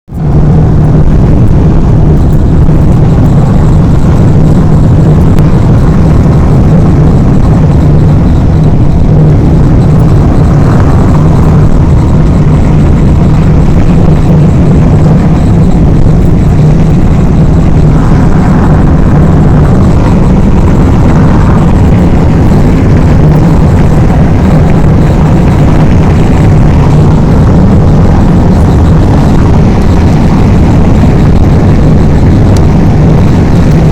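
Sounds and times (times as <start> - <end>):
car engine rumbling: 0.0 - 33.9.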